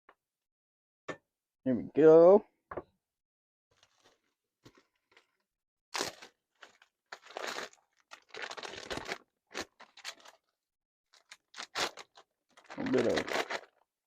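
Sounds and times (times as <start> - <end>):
plastic packaging crinkling and tearing: 3.8 - 5.4, 6.0 - 10.5, 11.2 - 13.8.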